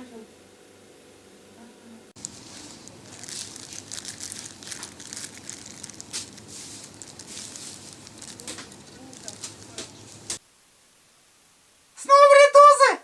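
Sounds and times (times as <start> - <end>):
packaging crinkling and rustling: 2.2 - 10.4.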